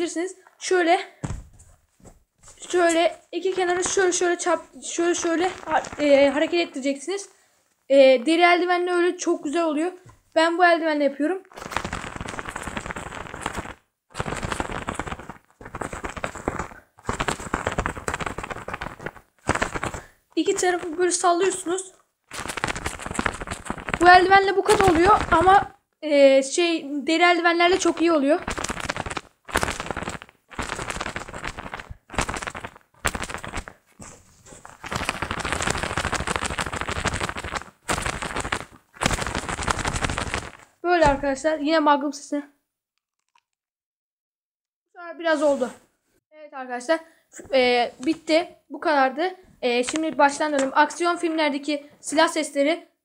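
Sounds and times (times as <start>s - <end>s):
fabric glove flapping: 1.2s - 6.8s, 11.5s - 25.8s, 27.4s - 41.6s, 49.8s - 50.7s.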